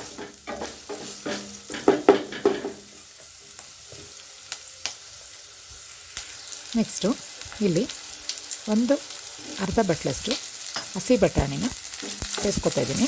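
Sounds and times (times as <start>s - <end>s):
spatula scraping a pan: 0.0s - 2.9s
spatula tapping a pan: 0.0s - 3.0s
onions sizzling in hot oil: 0.0s - 13.0s.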